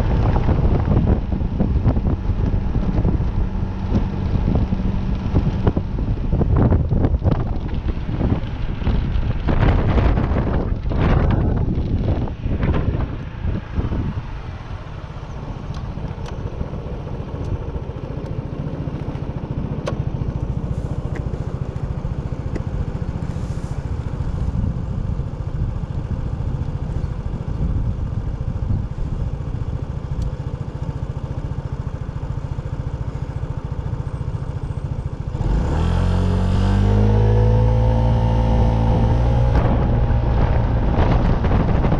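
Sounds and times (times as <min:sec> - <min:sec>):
vehicle engine rumbling: 0:00.0 - 0:41.9
rising engine note: 0:35.4 - 0:41.9.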